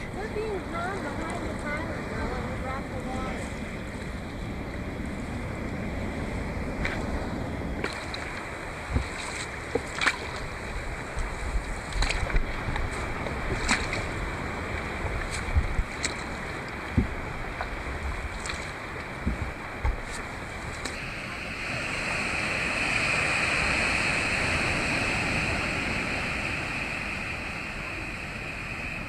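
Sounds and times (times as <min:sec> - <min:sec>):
wind and water wash: 0:00.0 - 0:29.0
paddle strokes splashing: 0:06.8 - 0:27.9.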